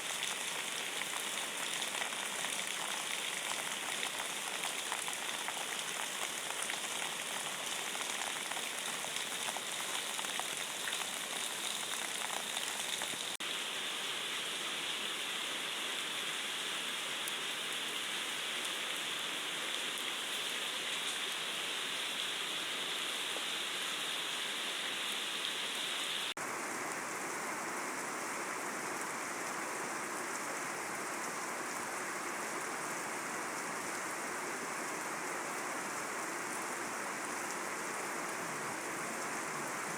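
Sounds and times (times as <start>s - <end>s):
ticks of single raindrops: 0.0s - 13.4s
steady rain falling: 0.0s - 39.9s.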